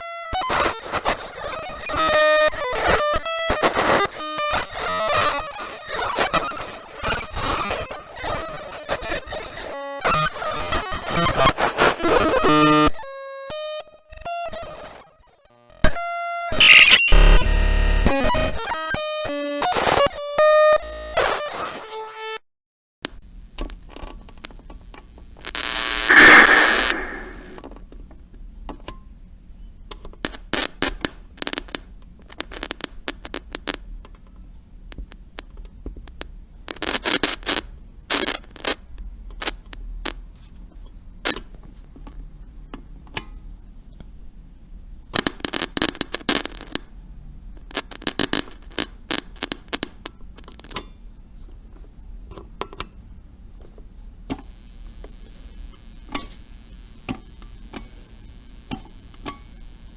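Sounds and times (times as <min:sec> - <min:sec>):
walkie-talkie static crackles: 0:16.5 - 0:17.5, 0:25.4 - 0:27.6, 0:54.5 - 0:59.9.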